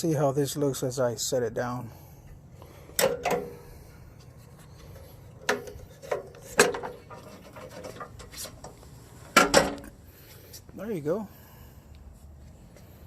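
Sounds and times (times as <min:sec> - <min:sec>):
metal steps knocking and clunking: 0:02.9 - 0:03.6, 0:05.4 - 0:10.0.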